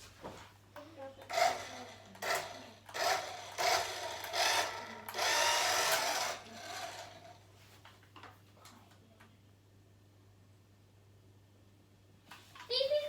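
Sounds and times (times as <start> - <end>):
toy car electric motor whirring: 1.3 - 7.4.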